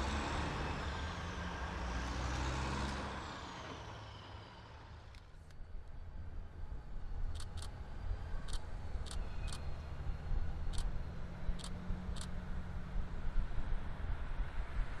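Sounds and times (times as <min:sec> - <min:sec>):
sharp high clicks: 0:07.3 - 0:07.7, 0:08.4 - 0:09.7, 0:10.7 - 0:10.9, 0:11.5 - 0:12.3.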